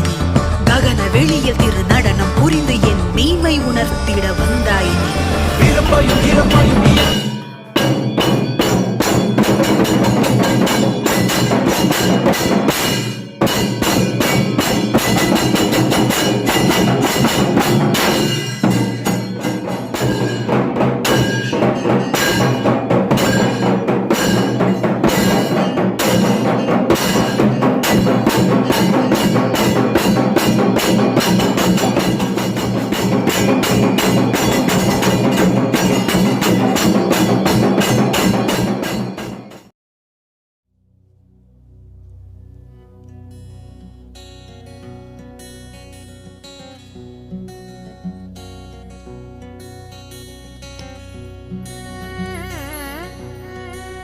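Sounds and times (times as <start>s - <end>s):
sustained instrumental backing: 0.0s - 38.9s
quick percussion strikes: 0.0s - 39.7s.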